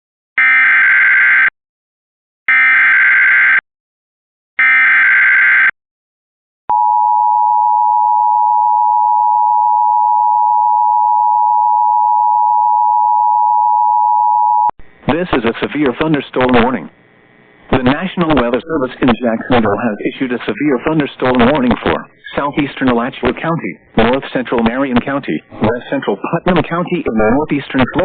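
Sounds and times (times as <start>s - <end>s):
warbling data tones: 25.0s - 28.0s
steady alert tone: 26.7s - 28.0s.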